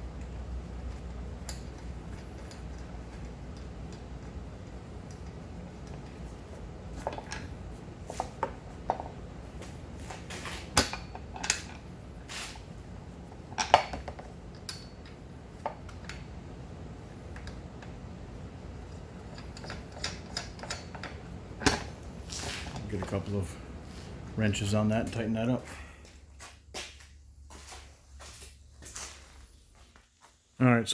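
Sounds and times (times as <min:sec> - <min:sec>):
metal bolts clinking: 0:10.8 - 0:11.9, 0:19.2 - 0:23.2.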